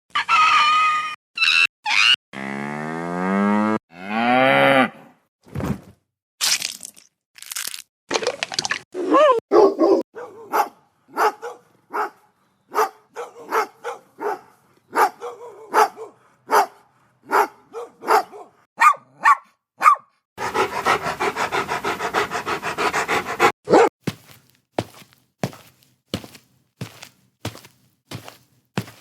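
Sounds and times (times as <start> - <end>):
dog barking: 9.5 - 20.2, 23.7 - 23.9.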